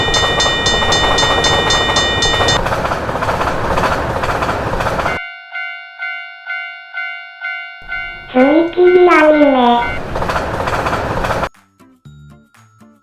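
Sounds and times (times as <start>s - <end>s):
lower-pitched crossing bell: 0.0s - 2.6s, 5.2s - 10.0s
rapid crossing bell: 0.0s - 2.8s, 5.0s - 12.9s
train rushing rumble: 0.0s - 5.2s, 7.8s - 11.5s.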